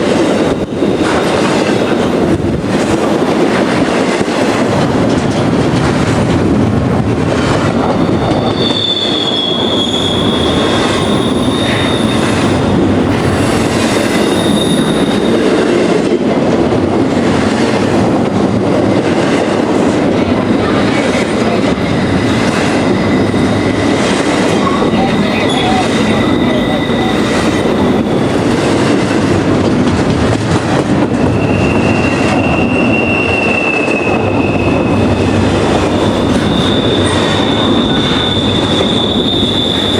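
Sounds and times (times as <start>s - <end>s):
freight train wheels rumbling: 0.0s - 39.9s
high wheel squeal: 8.1s - 12.7s, 14.0s - 15.6s, 20.8s - 28.3s, 31.2s - 39.9s.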